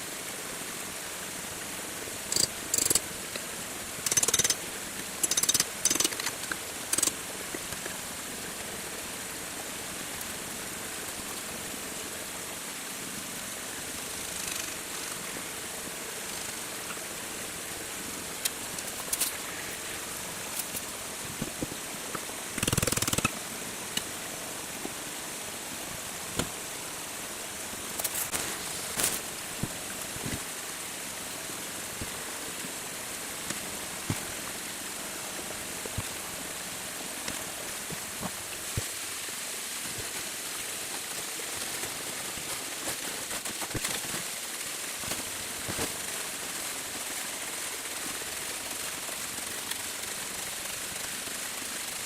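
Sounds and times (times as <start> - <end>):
stream water flowing: 0.0 - 52.0
knocks and clicks: 5.2 - 7.9, 22.2 - 24.0.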